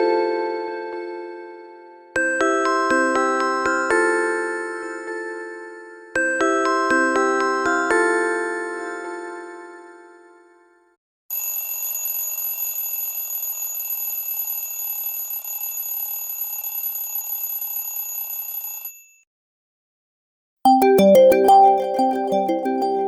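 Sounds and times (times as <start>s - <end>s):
bell-like alarm ring: 11.3s - 19.2s.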